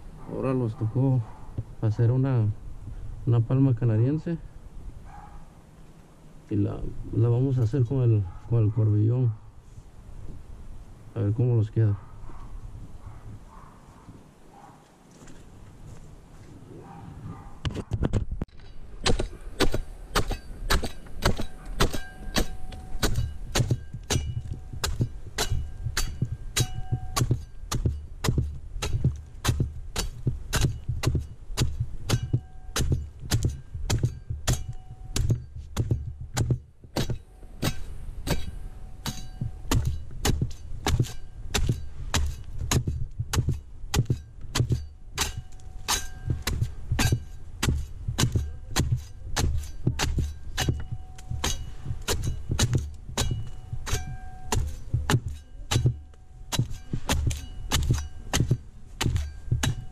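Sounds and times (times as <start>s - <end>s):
blade hacking palm fronds: 18.5s - 59.9s.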